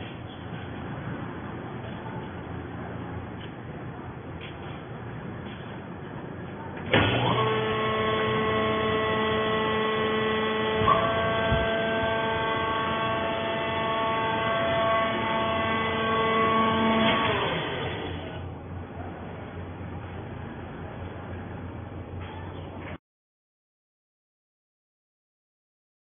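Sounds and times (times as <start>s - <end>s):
electric motor and pump humming: 6.8s - 18.8s.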